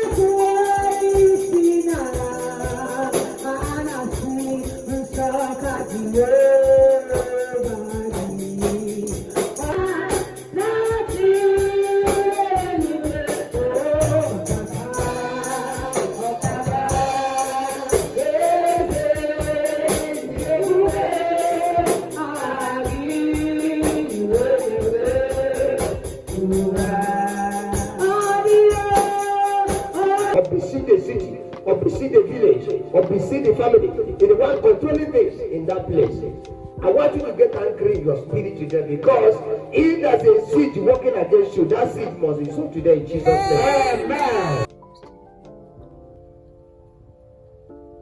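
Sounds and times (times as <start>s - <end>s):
tambourine and percussion beat: 0.0s - 30.4s, 43.2s - 44.7s
gospel singing: 0.0s - 44.7s.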